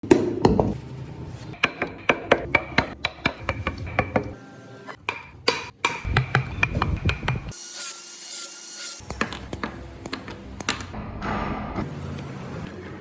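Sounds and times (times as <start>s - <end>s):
hammer striking a chisel: 1.6s - 4.4s, 5.0s - 7.6s.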